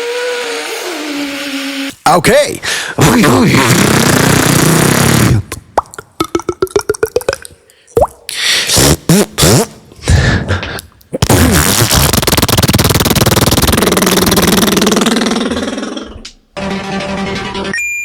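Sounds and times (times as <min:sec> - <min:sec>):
buzzing lip raspberry: 0:03.4 - 0:16.0
mouth pops and whoops: 0:05.1 - 0:09.3.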